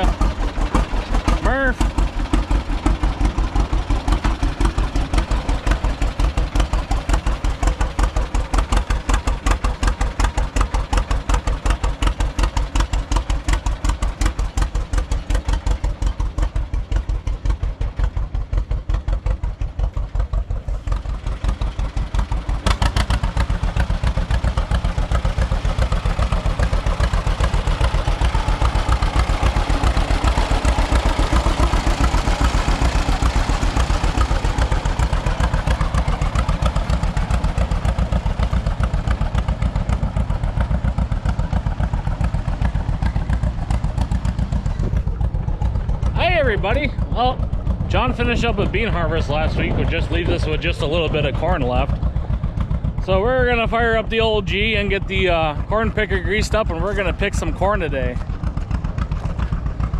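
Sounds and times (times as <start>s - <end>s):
tractor engine popping exhaust: 0.0s - 59.9s.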